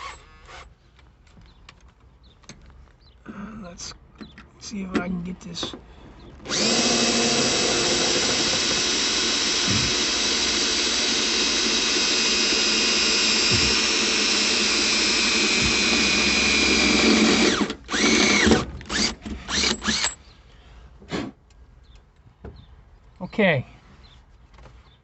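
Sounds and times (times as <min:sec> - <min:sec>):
electric drill drilling into metal: 0:06.4 - 0:20.2.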